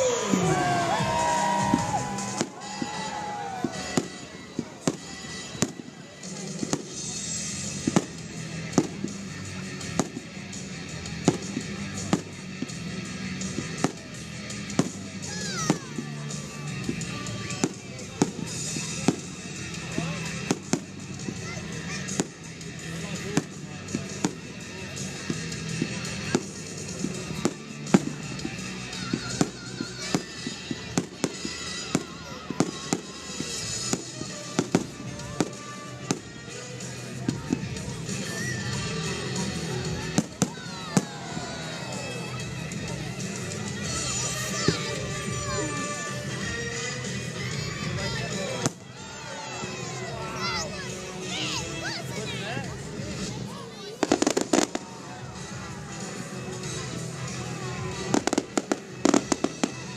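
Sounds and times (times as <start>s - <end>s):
whistling firework falling in pitch: 0.0s - 4.2s
fireworks bangs: 0.0s - 9.2s, 54.0s - 54.9s, 58.0s - 59.9s
background music: 0.0s - 59.9s.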